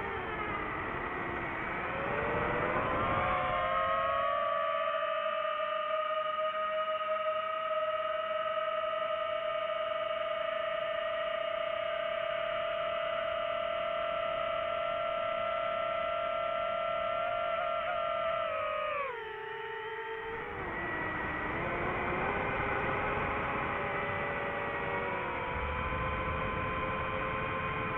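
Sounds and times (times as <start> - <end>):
quadcopter motors whining: 0.0 - 5.3, 13.1 - 27.9.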